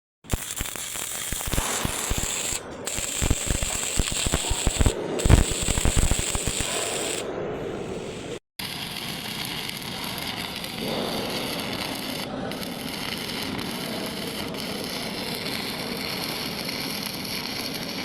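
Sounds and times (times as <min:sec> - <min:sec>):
arc welding crackle and pops: 0:00.2 - 0:07.3, 0:08.6 - 0:18.0
steady high whine: 0:01.1 - 0:08.4.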